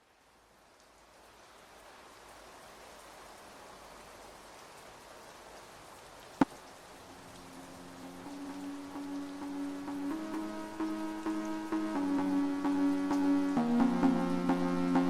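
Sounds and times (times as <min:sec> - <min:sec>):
rain: 0:00.0 - 0:15.0
held musical notes: 0:07.4 - 0:15.0.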